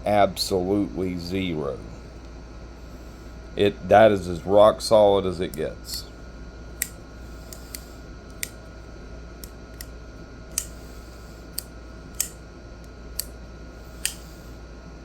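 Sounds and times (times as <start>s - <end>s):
folding knife lock snapping: 6.8s - 8.6s, 10.5s - 10.8s, 11.6s - 13.4s, 14.0s - 14.3s.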